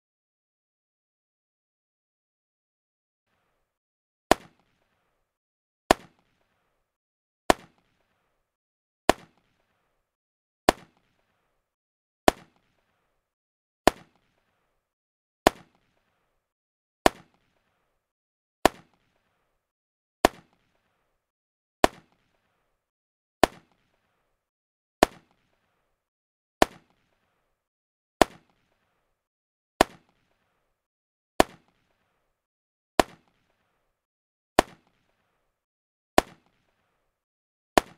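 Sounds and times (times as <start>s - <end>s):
sharp gunshot cracks: 4.3s - 4.8s, 5.9s - 6.6s, 7.5s - 8.0s, 9.1s - 9.7s, 10.7s - 11.3s, 12.3s - 12.8s, 13.9s - 14.4s, 15.5s - 16.0s, 20.2s - 20.7s, 21.8s - 22.4s, 23.4s - 24.0s, 25.0s - 25.6s, 29.8s - 30.4s, 31.4s - 32.0s, 33.0s - 33.7s, 34.6s - 35.1s, 36.2s - 36.8s.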